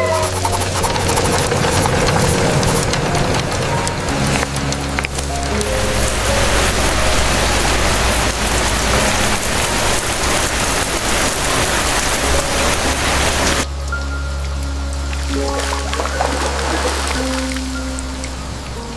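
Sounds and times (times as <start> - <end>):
soft background music: 0.0 - 18.9
steady rain falling: 0.8 - 13.7.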